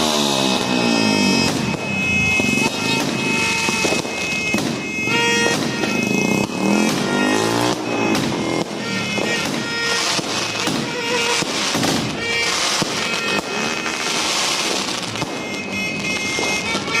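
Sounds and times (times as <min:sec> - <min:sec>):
fireworks bangs and crackling: 0:00.0 - 0:17.0
music: 0:15.2 - 0:17.0.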